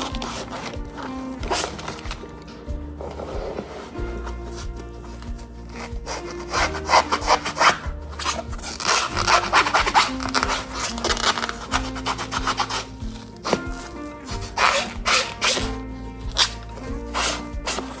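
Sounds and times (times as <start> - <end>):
background music: 0.0 - 18.0
eraser scrubbing shoe sole: 5.8 - 18.0.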